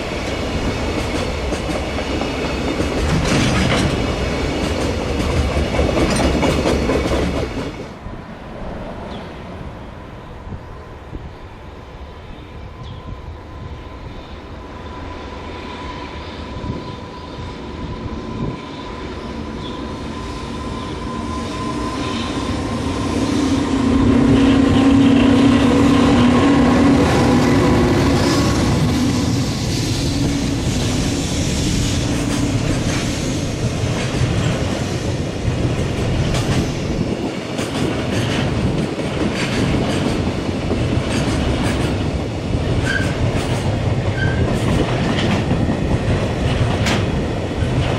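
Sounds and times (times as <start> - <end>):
electric locomotive whine: 0.0 - 47.9
wheels clicking over rail joints: 0.9 - 7.9.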